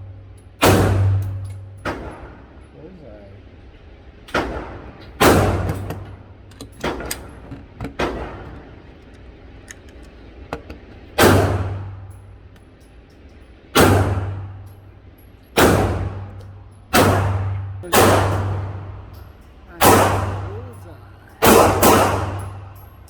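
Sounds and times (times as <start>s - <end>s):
loud pistol shots echoing: 0.6s - 2.4s, 4.3s - 6.2s, 11.2s - 12.1s, 13.8s - 14.6s, 15.6s - 19.1s, 19.8s - 20.6s, 21.4s - 22.8s
distant gunshots: 4.4s - 6.0s, 11.2s - 11.9s, 13.8s - 14.4s, 15.6s - 16.3s, 16.9s - 19.0s, 19.8s - 20.5s, 21.4s - 22.7s.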